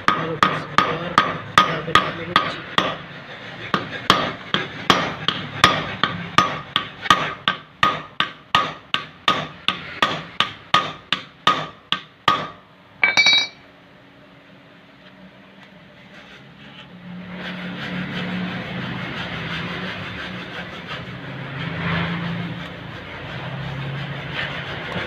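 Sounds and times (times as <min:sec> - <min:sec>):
hammer striking metal: 0:00.0 - 0:03.0, 0:03.7 - 0:13.6.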